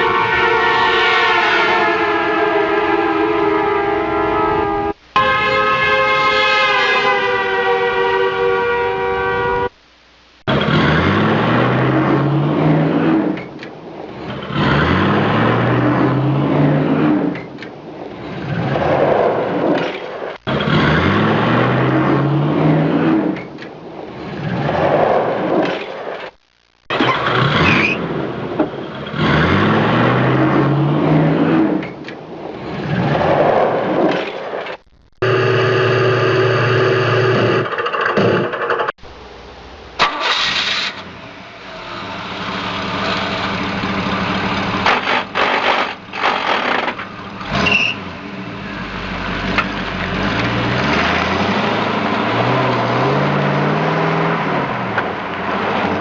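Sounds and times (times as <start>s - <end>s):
horn blast: 0.0s - 9.8s
vehicle engine revving: 10.5s - 13.4s, 14.2s - 17.4s, 20.5s - 23.4s, 27.0s - 31.8s, 40.1s - 56.0s.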